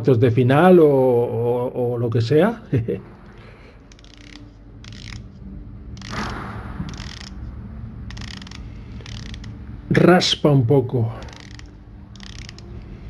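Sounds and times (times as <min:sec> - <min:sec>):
watch bezel ratcheting clicks: 0:03.9 - 0:05.3, 0:06.0 - 0:06.3, 0:06.9 - 0:07.4, 0:08.1 - 0:09.6, 0:11.2 - 0:13.0.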